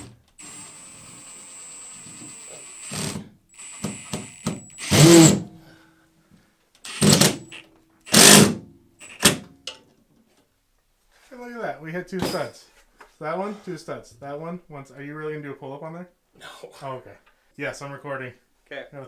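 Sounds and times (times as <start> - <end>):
power drill drilling into wood: 0.0 - 5.4, 6.9 - 9.4.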